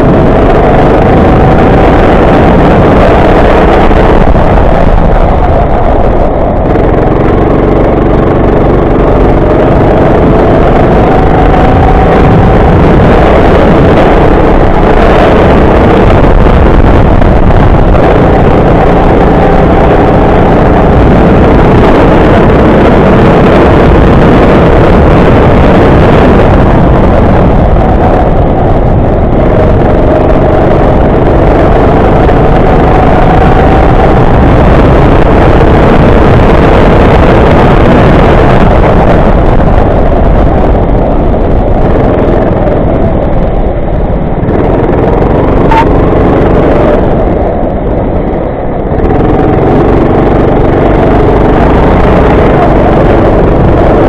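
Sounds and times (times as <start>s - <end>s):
go-kart engine revving: 0.0s - 39.4s, 49.0s - 54.0s.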